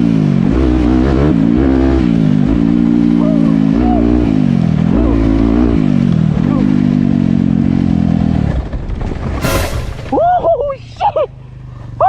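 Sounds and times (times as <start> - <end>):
dirt bike engine revving: 0.0 - 8.2
short burst of noise: 9.4 - 10.2.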